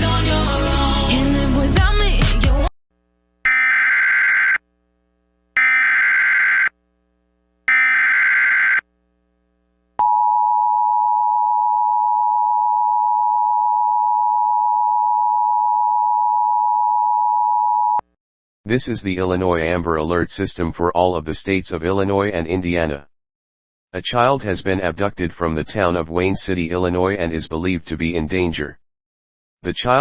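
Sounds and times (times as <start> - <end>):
music: 0.0 - 2.7.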